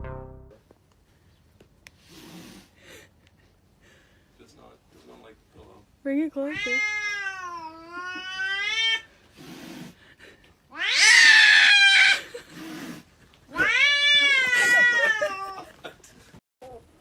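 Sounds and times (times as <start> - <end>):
cat yowling: 6.5 - 9.1, 10.7 - 12.2, 13.5 - 15.7.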